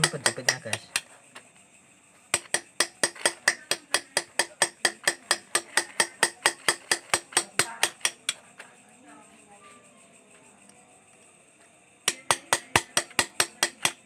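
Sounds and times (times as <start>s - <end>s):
hammer tapping metal chisel: 0.0s - 1.1s, 2.3s - 8.4s, 12.0s - 14.0s.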